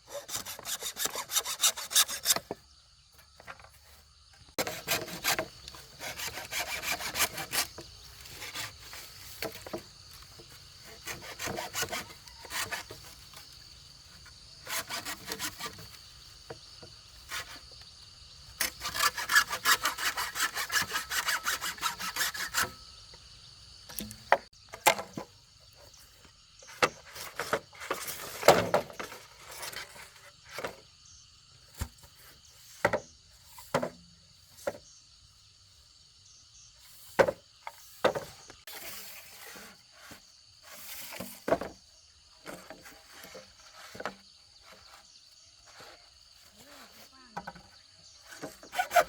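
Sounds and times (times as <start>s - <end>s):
hand sawing: 0.0s - 2.6s, 4.6s - 13.4s, 14.6s - 16.0s, 17.2s - 17.7s, 18.6s - 22.8s, 48.2s - 49.0s
faint insect buzz: 0.2s - 49.0s.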